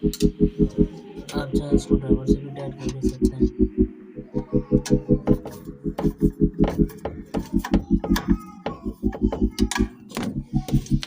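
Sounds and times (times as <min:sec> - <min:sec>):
low pulsing throb: 0:00.0 - 0:11.0.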